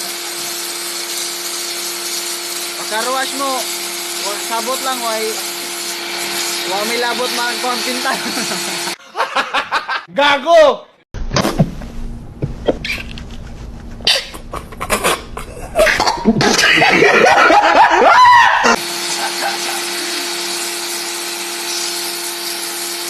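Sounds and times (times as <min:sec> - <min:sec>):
pressure washer motor humming: 0:00.0 - 0:09.0, 0:18.6 - 0:23.0
loud laughter: 0:08.2 - 0:10.1, 0:14.1 - 0:20.1.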